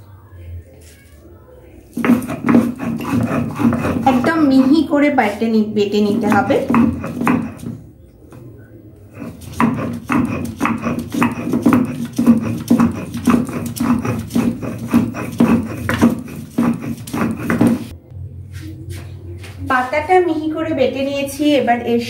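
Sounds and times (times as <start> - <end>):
stone grinding strokes: 2.0 - 7.8, 9.1 - 17.9.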